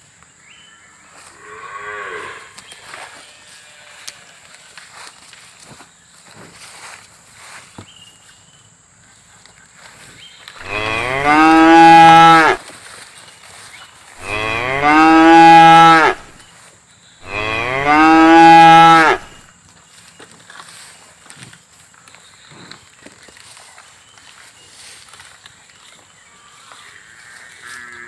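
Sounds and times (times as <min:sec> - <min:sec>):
cow mooing: 0:01.3 - 0:02.6, 0:10.6 - 0:12.6, 0:14.2 - 0:16.4, 0:17.2 - 0:19.4, 0:26.8 - 0:28.0.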